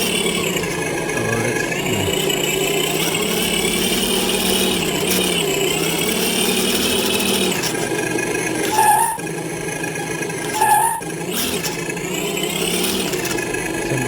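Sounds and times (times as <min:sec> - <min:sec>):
simulated diesel engine from speaker: 0:00.0 - 0:06.8, 0:12.4 - 0:14.0.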